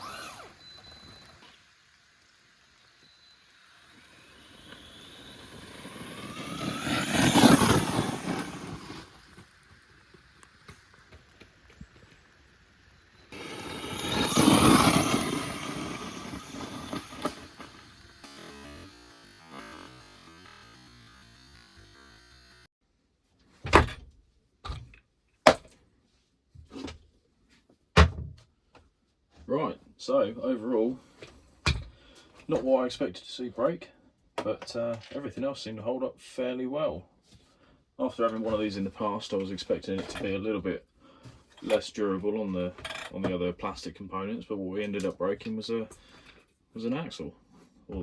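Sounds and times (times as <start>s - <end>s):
electric motor whine: 0.0s - 12.2s, 12.9s - 22.7s
tyre noise on loose surface: 4.6s - 12.3s, 13.3s - 20.4s
sharp knocks and thumps: 23.6s - 25.8s, 28.0s - 28.4s.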